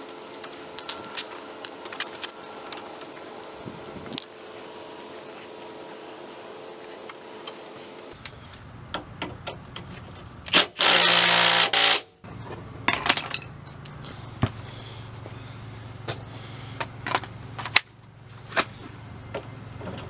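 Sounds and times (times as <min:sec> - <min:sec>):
tools and metal parts clinking: 0:00.0 - 0:04.6, 0:09.8 - 0:14.1, 0:17.0 - 0:17.8
impact wrench burst: 0:10.5 - 0:12.2.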